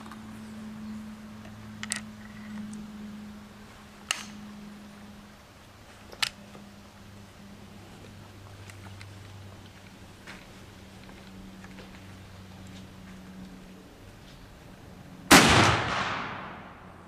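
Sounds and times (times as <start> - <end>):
rifle action metallic clicks: 4.1 - 4.4.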